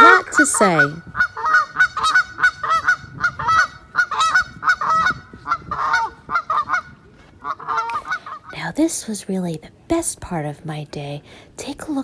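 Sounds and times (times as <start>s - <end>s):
geese honking: 0.0s - 8.6s.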